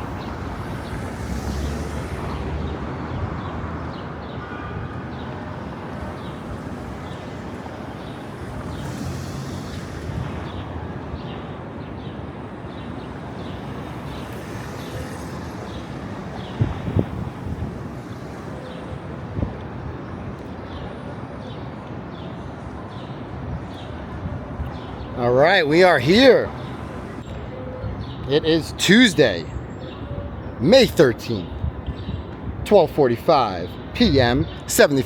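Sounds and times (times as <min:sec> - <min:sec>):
passing traffic: 0:00.0 - 0:35.0.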